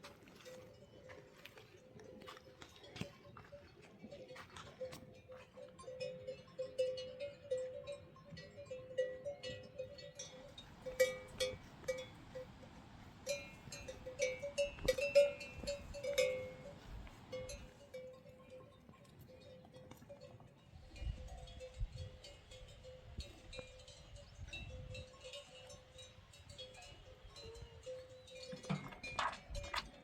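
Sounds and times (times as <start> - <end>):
metal livestock bells clanking: 0.0 - 30.0.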